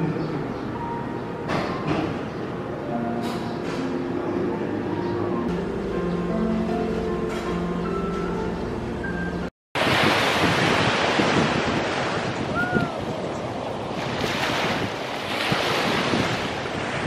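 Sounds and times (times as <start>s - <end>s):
sea waves washing onto shore: 9.8s - 17.0s
wind buffeting microphone: 9.8s - 17.0s.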